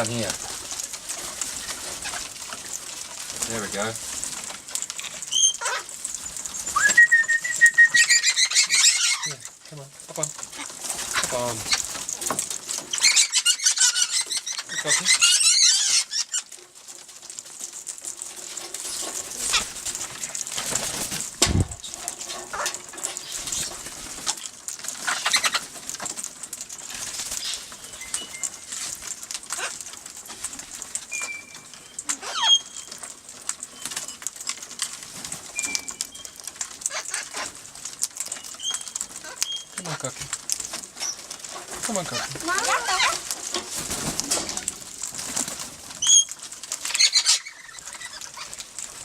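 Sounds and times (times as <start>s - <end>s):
parrots flapping wings: 0.0s - 49.0s
loud gliding squawk: 6.8s - 9.4s
dull thump: 21.4s - 21.8s.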